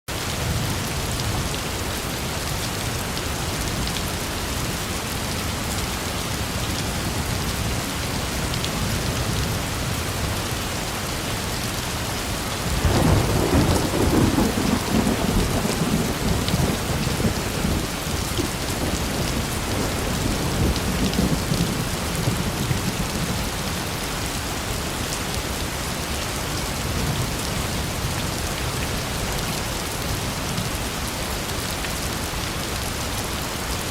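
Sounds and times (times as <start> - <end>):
steady rain falling: 0.1 - 33.9
thunder rumbling: 12.6 - 23.8.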